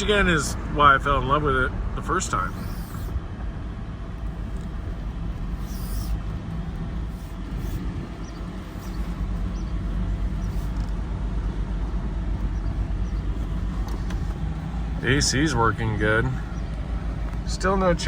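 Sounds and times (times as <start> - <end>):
engine and road noise rumble: 0.0 - 18.0.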